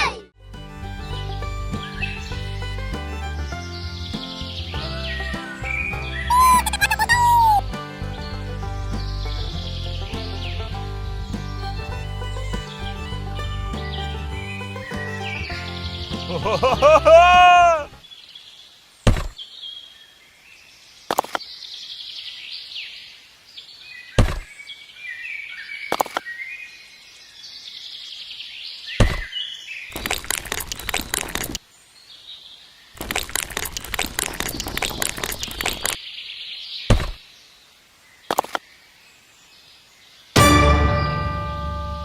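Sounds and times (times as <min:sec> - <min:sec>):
birds chirping: 0:00.0 - 0:42.0
sharp knocks: 0:40.4 - 0:42.0.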